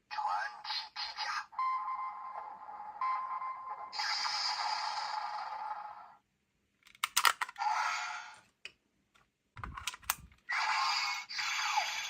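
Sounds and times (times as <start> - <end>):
toy electronic sound effects: 0.2 - 6.1, 10.5 - 12.0
plastic toy buttons clicking: 6.9 - 7.6.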